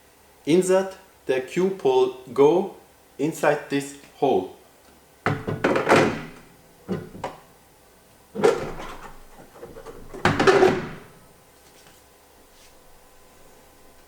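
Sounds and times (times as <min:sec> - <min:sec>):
knocks and clunks: 0:05.3 - 0:07.4, 0:08.4 - 0:11.3
sliding scraping clatter: 0:08.4 - 0:11.2.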